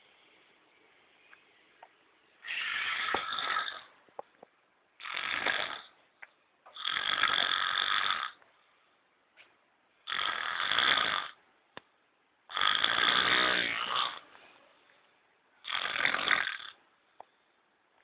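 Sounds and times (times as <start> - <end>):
man snoring loudly: 2.5 - 3.9, 5.0 - 5.9, 6.8 - 8.4, 10.1 - 11.4, 12.5 - 14.2, 15.6 - 16.8.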